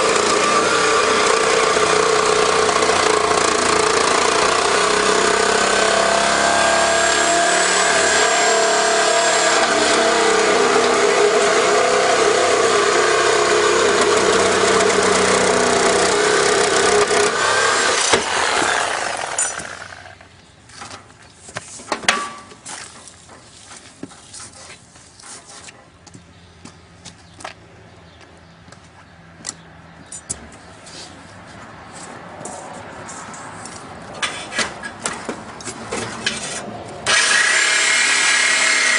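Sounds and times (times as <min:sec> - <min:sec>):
power tool cutting steel: 0:00.0 - 0:20.2, 0:36.4 - 0:38.9.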